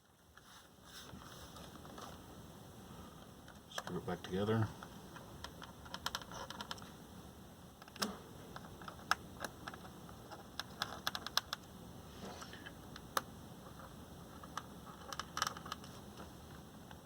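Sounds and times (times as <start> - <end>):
light clicks and taps: 3.5 - 4.0.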